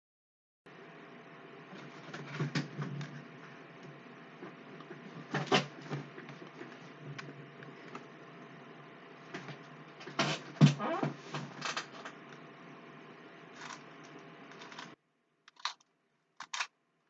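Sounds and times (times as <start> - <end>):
puzzle cube plastic clicks: 15.5 - 16.7.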